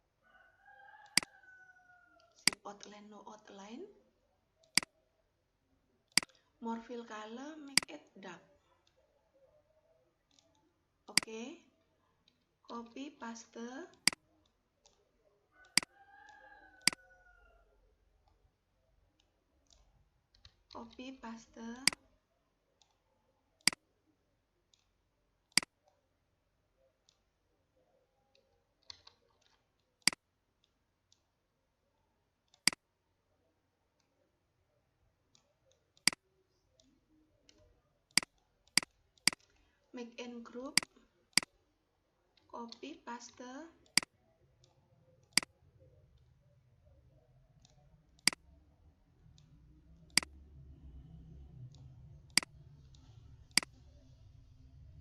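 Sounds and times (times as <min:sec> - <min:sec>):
faint low hum: 0:00.0 - 0:55.0
computer mouse clicking: 0:00.8 - 0:01.5, 0:02.2 - 0:02.9, 0:15.6 - 0:17.2, 0:21.8 - 0:22.0, 0:28.3 - 0:31.2, 0:32.5 - 0:32.8, 0:35.3 - 0:39.8, 0:47.6 - 0:48.4, 0:49.3 - 0:50.4.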